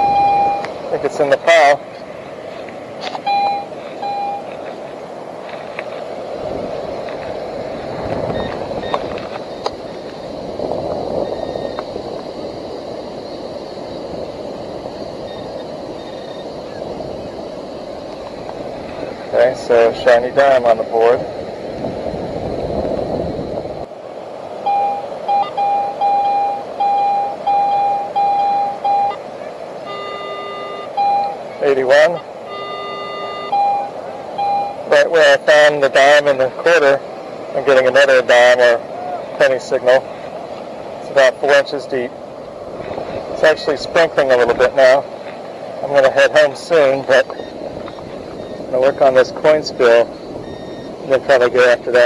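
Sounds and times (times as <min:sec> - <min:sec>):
metal detector beeps: 0:00.0 - 0:01.7, 0:03.1 - 0:04.6, 0:08.3 - 0:10.2, 0:11.2 - 0:11.9, 0:15.2 - 0:16.6, 0:24.6 - 0:29.2, 0:29.8 - 0:36.3, 0:46.0 - 0:52.0
rushing noise: 0:00.0 - 0:52.0.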